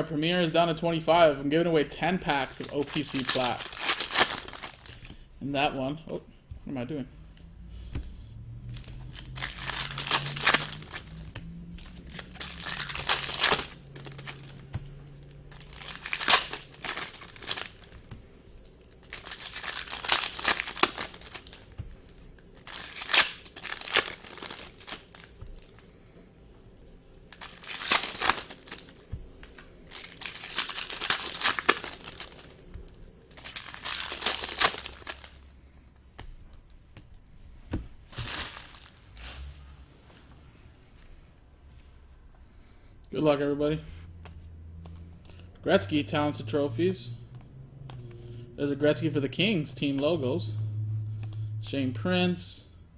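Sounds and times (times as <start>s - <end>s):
foil wrappers crinkling and tearing: 2.2s - 5.2s, 8.8s - 26.0s, 27.2s - 35.5s, 38.1s - 39.5s.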